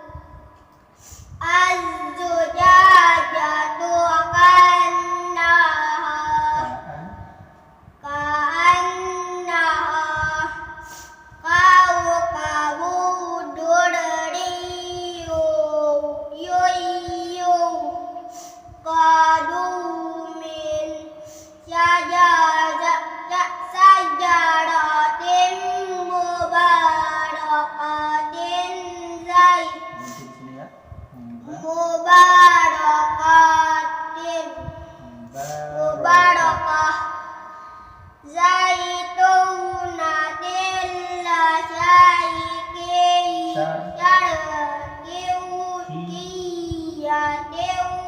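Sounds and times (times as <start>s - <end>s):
high-pitched voice chanting: 6.3s - 7.4s, 28.4s - 33.2s, 34.4s - 37.2s, 38.8s - 48.0s.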